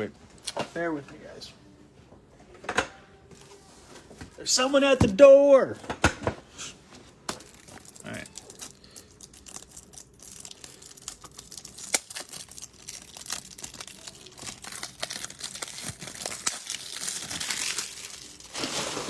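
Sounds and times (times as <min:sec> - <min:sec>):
plastic wrappers crinkling and tearing: 0:07.3 - 0:19.0.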